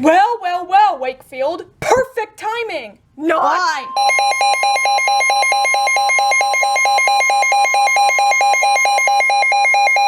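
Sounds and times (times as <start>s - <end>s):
steady warning alarm tone: 3.9s - 10.0s
warbling electronic alarm beeps: 3.9s - 10.0s.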